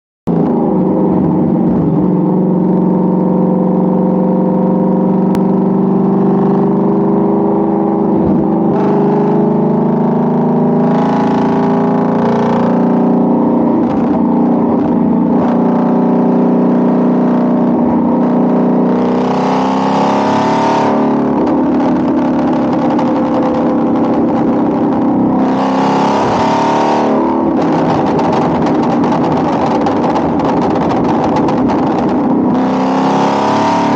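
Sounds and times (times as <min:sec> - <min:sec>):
car engine revving: 0:00.3 - 0:33.9
exhaust crackle: 0:27.2 - 0:32.6.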